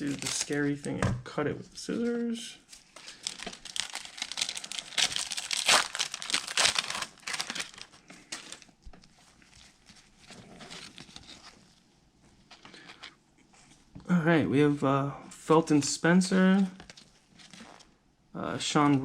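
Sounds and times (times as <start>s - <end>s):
plastic wrapper crinkling: 0.0s - 0.8s, 1.9s - 11.6s
scissors cutting wrapper: 3.1s - 8.6s.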